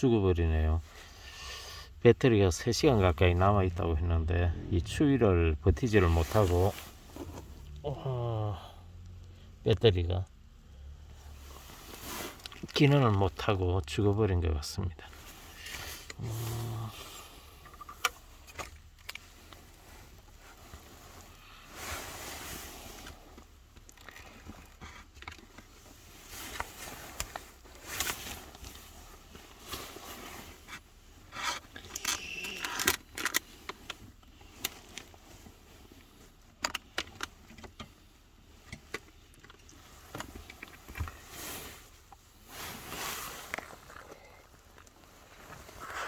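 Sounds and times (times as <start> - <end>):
objects clicking and rustling: 31.4 - 35.1.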